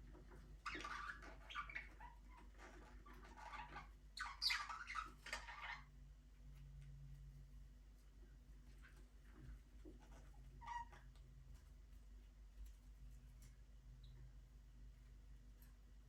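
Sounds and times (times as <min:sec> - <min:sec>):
budgerigars chirping: 0:00.6 - 0:02.2, 0:03.3 - 0:05.8.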